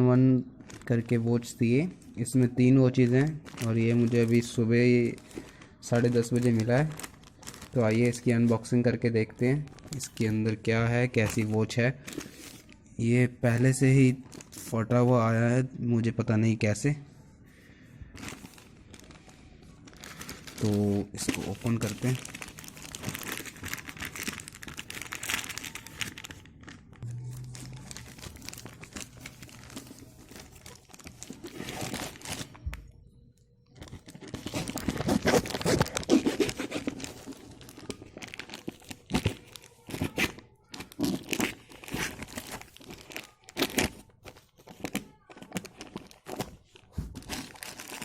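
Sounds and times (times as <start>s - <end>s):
package tearing and crinkling: 3.2s - 8.4s, 19.9s - 32.6s, 33.8s - 48.0s.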